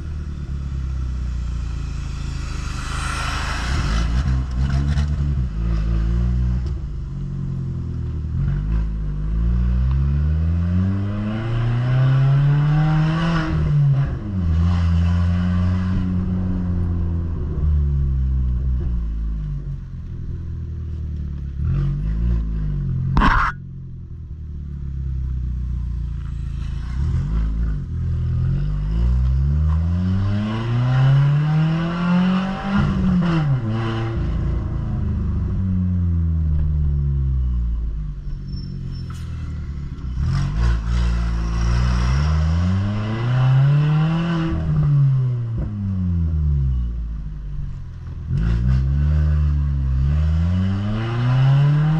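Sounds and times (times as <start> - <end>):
car exhaust accelerating: 0.0 - 14.9.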